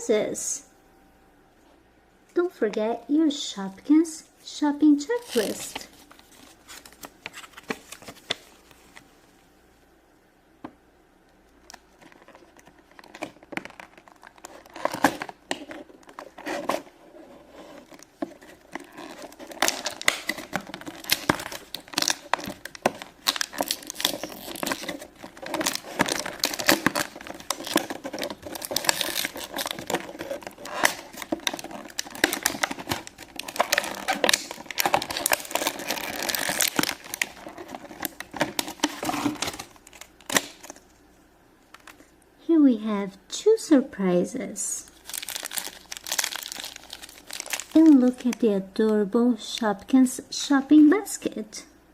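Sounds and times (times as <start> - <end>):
packaging crinkling and tearing: 5.0 - 9.0, 11.6 - 41.0, 44.9 - 48.4.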